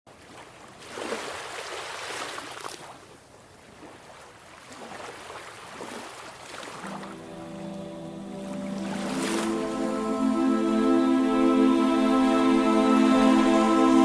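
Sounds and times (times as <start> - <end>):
sea waves washing in: 6.6 - 14.0.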